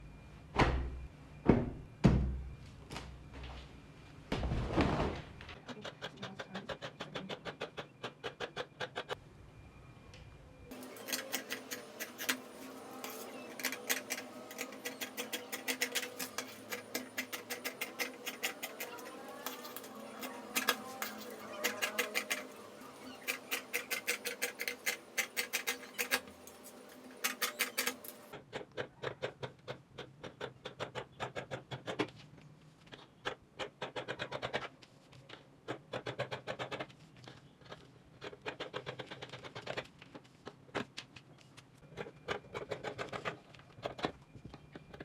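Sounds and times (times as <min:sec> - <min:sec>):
sewing machine stitching: 0:10.7 - 0:26.3, 0:27.2 - 0:28.3.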